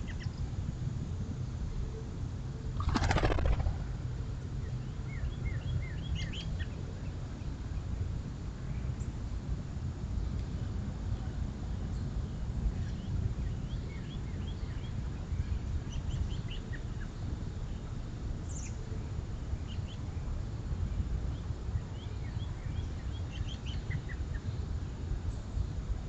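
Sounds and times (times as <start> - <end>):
steady low rumble: 0.0 - 18.4
small birds chirping: 4.6 - 8.0, 21.0 - 25.4.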